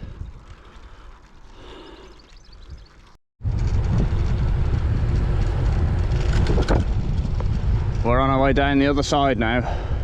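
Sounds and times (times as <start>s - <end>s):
wind buffeting microphone: 0.0s - 1.3s, 2.2s - 10.0s
faint birdsong: 0.0s - 3.2s.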